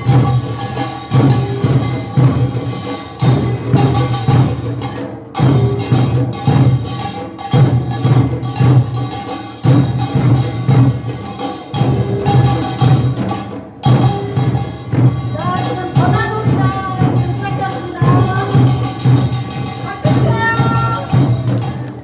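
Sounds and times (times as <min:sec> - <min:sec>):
gongs and drums rhythm: 0:00.0 - 0:22.0.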